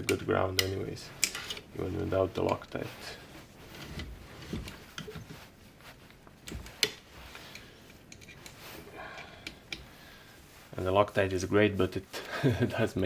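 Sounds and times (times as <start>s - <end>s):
hand tools clicking and knocking: 0.0s - 2.8s, 6.4s - 10.0s.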